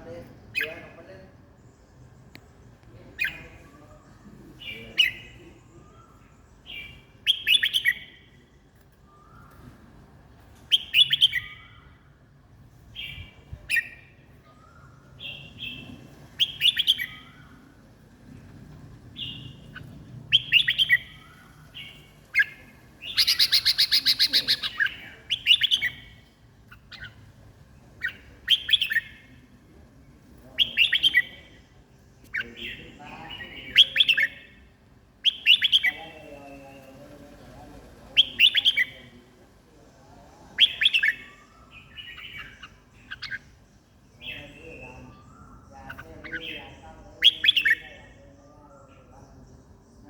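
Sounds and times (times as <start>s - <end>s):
bird whistled song: 4.7s - 9.8s, 10.7s - 12.0s, 13.0s - 17.6s, 19.2s - 27.2s, 28.0s - 29.3s, 30.6s - 31.4s, 35.2s - 36.0s, 38.2s - 39.1s, 40.6s - 47.9s.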